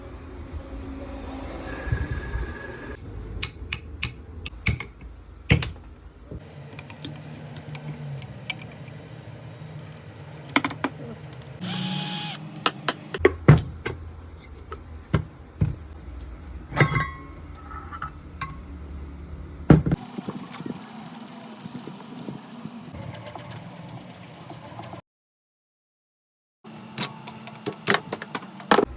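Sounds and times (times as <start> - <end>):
power tool running: 11.6 - 13.1
low steady hum: 13.3 - 20.0.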